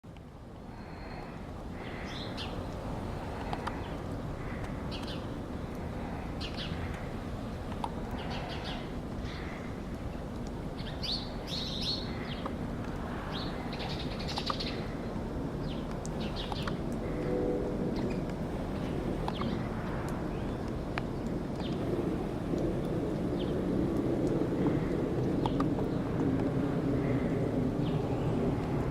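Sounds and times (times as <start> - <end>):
low background rumble: 0.1 - 28.9
small birds chirping: 0.8 - 7.1, 7.7 - 12.6, 13.2 - 16.8.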